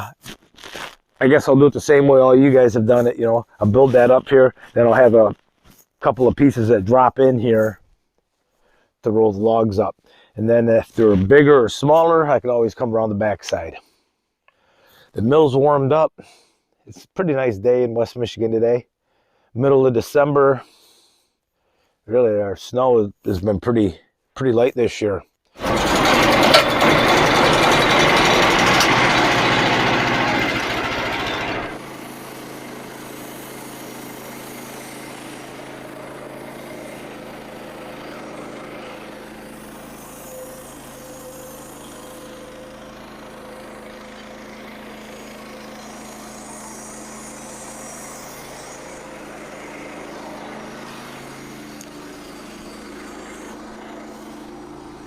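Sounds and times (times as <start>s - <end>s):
gas engine running: 25.6s - 55.0s
saw blade cutting log: 25.6s - 55.0s.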